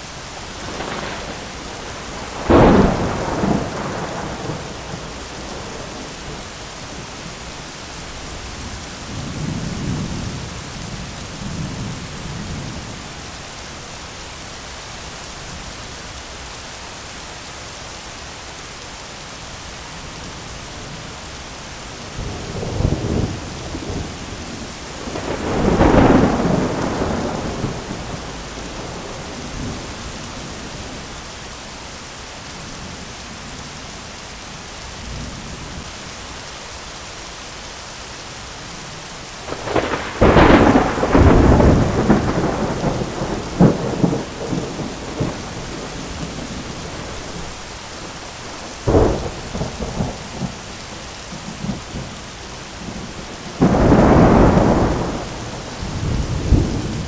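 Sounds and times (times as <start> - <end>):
heavy rain hissing: 0.0 - 57.0
thunder rolling: 0.5 - 6.6, 22.2 - 31.0, 39.4 - 50.7, 52.8 - 57.0
sharp thunder clap: 0.6 - 6.1, 39.5 - 47.2, 53.6 - 57.0.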